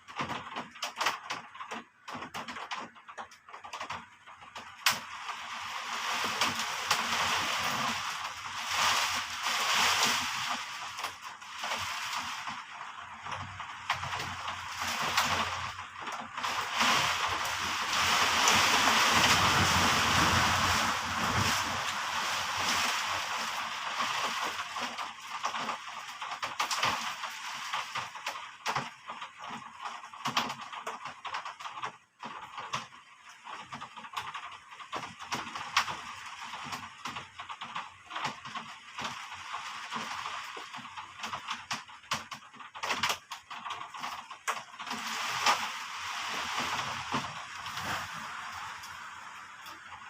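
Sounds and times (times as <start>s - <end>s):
heavy rain falling: 0.0s - 50.0s
raindrops pattering: 0.0s - 50.0s.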